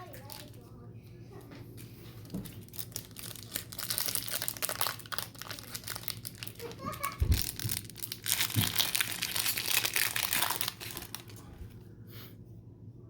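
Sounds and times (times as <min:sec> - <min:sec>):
card pack wrapper tearing: 0:02.6 - 0:11.4.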